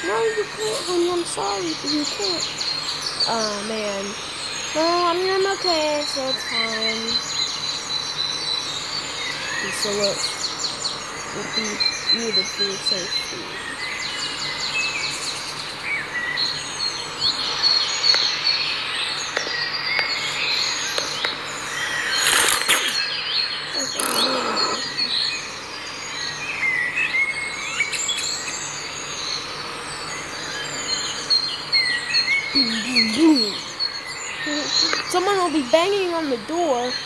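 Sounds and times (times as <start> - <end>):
birds chirping and singing: 0.0 - 37.0
brief rush of noise: 22.1 - 23.1.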